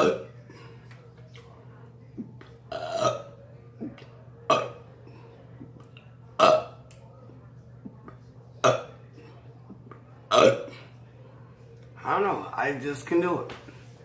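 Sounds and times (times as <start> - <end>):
woman burping: 0.0 - 0.4, 2.2 - 4.9, 6.4 - 6.8, 8.6 - 9.0, 10.3 - 10.9.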